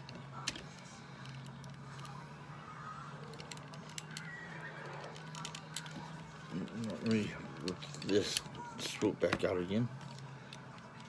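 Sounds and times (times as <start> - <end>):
plastic parts clicking and snapping: 3.2 - 4.3, 4.9 - 11.0.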